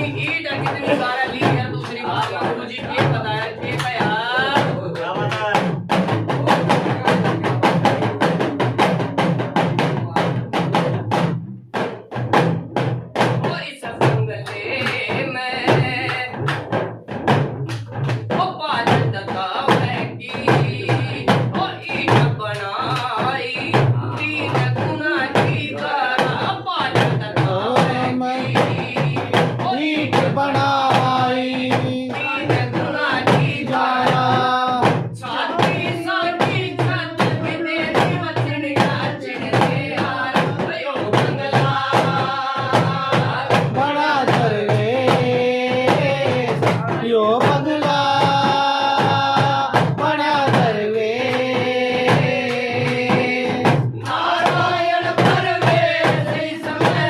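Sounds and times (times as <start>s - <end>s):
man singing devotional melody: 0.0s - 8.0s, 25.6s - 36.9s, 40.4s - 54.5s
steady drum beat: 0.0s - 57.0s.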